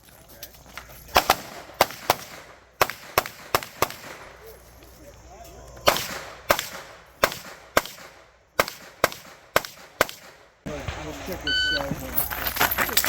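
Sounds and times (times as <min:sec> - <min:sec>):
gunshots: 0:01.1 - 0:04.4, 0:05.8 - 0:11.6.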